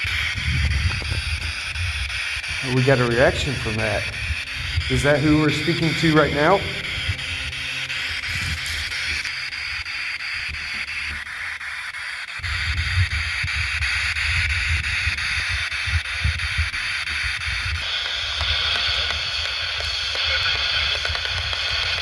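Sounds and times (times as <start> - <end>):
radio static hissing: 0.0 - 12.7, 17.8 - 22.0
low rumbling thumps: 2.5 - 11.0.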